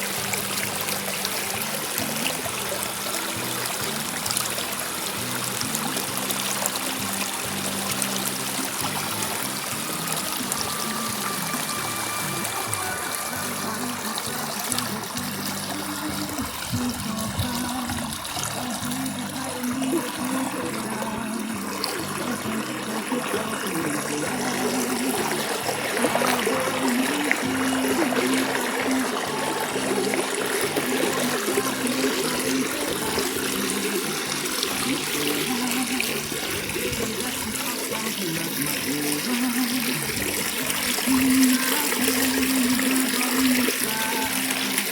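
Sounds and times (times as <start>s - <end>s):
music playing: 0.0s - 44.9s
rain and running water: 0.0s - 44.9s.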